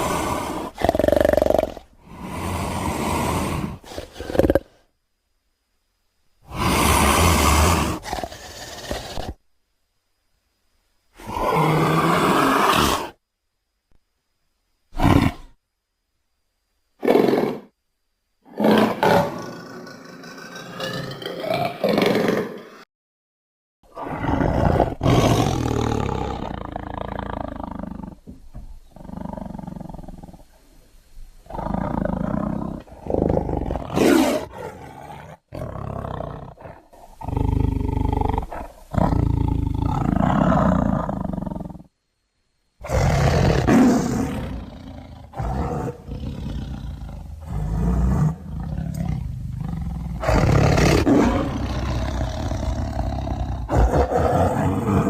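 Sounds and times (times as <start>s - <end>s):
big cat roars: 0.0s - 4.8s, 6.5s - 9.4s, 11.2s - 13.2s, 18.5s - 22.6s, 23.9s - 28.2s, 28.9s - 30.5s, 31.4s - 41.9s, 42.8s - 55.0s.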